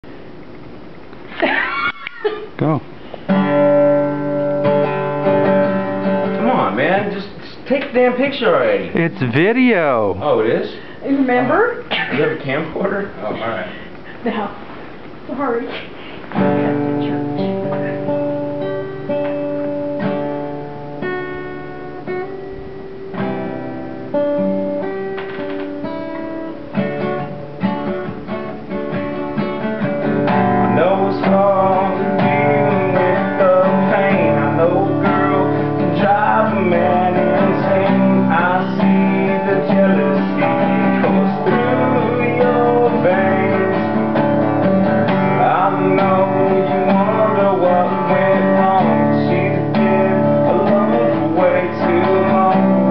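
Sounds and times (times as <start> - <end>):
acoustic guitar picked and strummed: 2.6 - 10.4, 16.0 - 52.9
person singing: 9.0 - 10.2.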